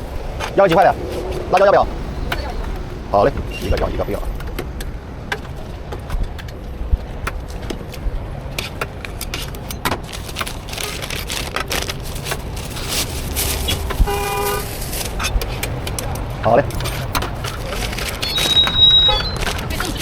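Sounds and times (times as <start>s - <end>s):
street traffic rumble: 0.0s - 20.0s
vehicle horn toot: 14.0s - 14.7s, 18.2s - 19.6s.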